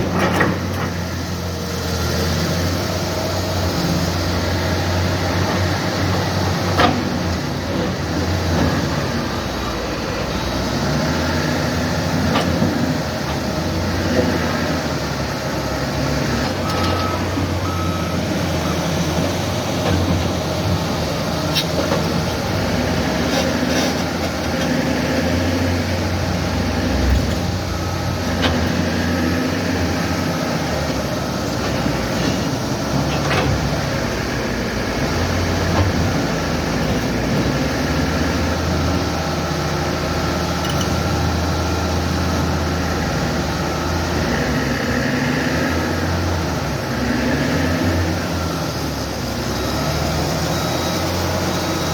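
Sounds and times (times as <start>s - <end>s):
diesel engine running: 0.0s - 51.9s
short beeping tones: 16.7s - 18.8s.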